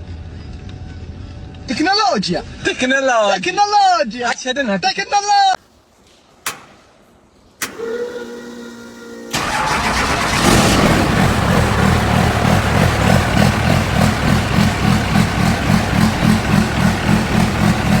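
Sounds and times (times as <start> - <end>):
engine running with low throb: 9.3 - 18.0.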